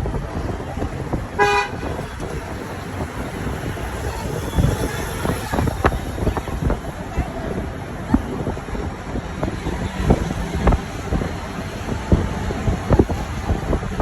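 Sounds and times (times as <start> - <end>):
engine and road noise: 0.0 - 14.0
vehicle horn toot: 1.0 - 7.4.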